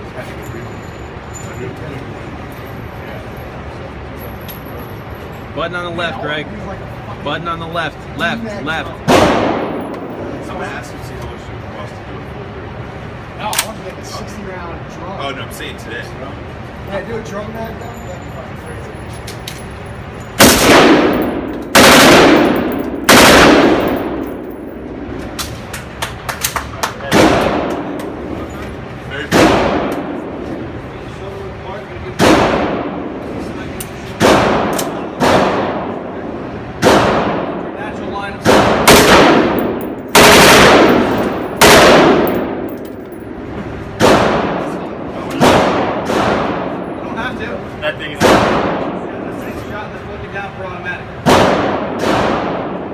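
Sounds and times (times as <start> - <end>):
gunshots with echo: 9.1 - 10.3, 20.4 - 25.2, 27.0 - 28.1, 29.3 - 30.4, 32.2 - 33.2, 34.2 - 36.2, 36.8 - 37.8, 38.4 - 43.4, 44.0 - 47.0, 48.2 - 49.1, 51.2 - 52.9
automatic gunfire bursts: 20.4 - 24.2, 38.5 - 42.6.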